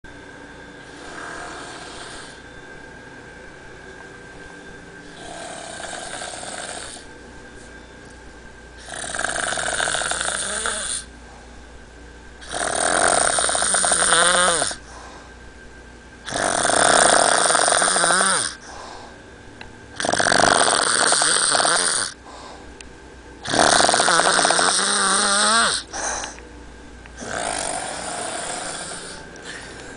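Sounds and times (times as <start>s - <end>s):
loud snoring: 0.8s - 2.4s, 5.1s - 7.1s, 8.8s - 11.1s, 12.4s - 14.8s, 16.2s - 18.7s, 20.0s - 22.2s, 23.4s - 26.4s, 27.2s - 29.7s.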